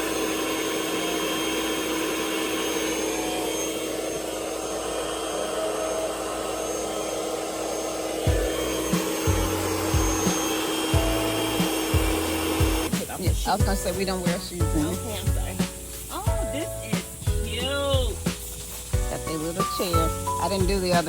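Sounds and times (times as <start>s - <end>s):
electric air pump whirring: 0.0s - 21.0s
low thumps: 8.3s - 21.0s.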